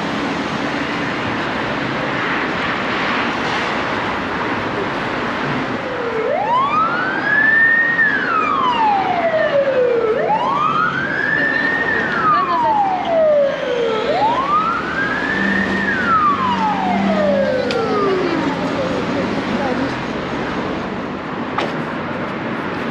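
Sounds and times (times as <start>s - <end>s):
street traffic noise: 0.0s - 22.9s
emergency siren wailing: 4.8s - 20.0s.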